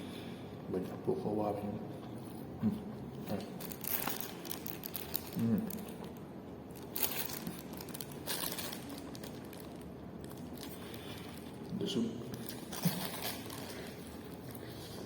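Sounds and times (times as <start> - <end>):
food packaging crinkling: 3.6 - 15.0.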